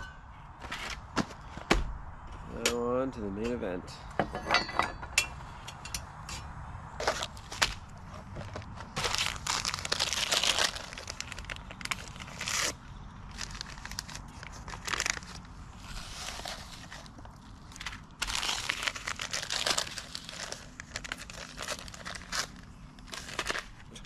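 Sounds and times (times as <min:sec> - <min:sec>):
crinkling and rustling: 0:07.0 - 0:24.0.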